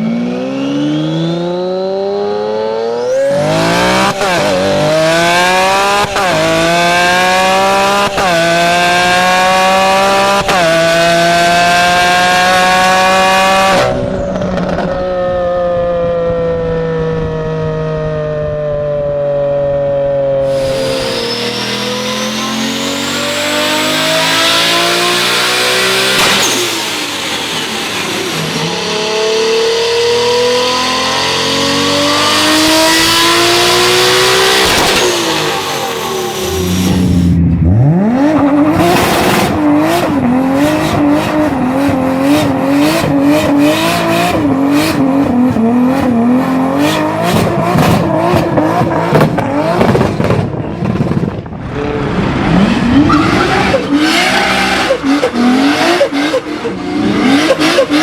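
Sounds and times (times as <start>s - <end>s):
high-revving engine squeal: 0.0s - 18.6s, 20.0s - 50.9s, 51.6s - 58.0s
car engines accelerating hard: 0.0s - 58.0s
sharp exhaust pops: 47.3s - 51.6s.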